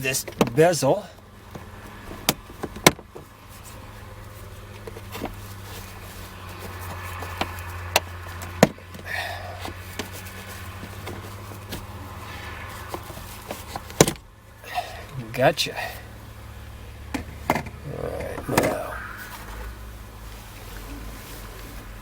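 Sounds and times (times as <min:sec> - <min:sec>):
steady low hum: 0:17.7 - 0:20.6.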